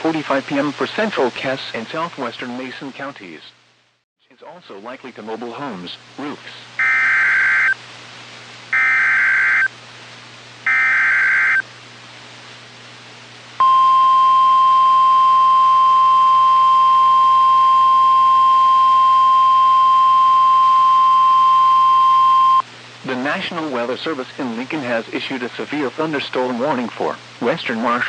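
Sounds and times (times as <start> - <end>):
steady single-pitch alarm tone: 6.8 - 7.8, 8.8 - 9.7, 10.7 - 11.6, 13.6 - 22.6.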